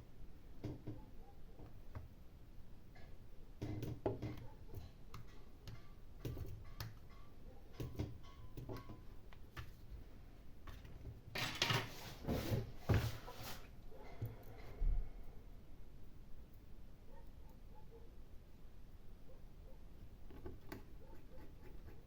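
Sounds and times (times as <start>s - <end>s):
tools clicking and tapping: 3.0s - 9.8s
scraping and rustling: 10.7s - 13.8s.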